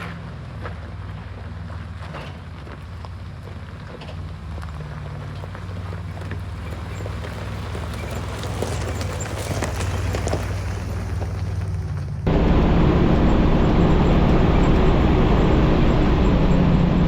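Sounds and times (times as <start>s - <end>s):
jeep engine running: 0.0s - 17.0s
rough rattling and crackling: 3.8s - 15.1s.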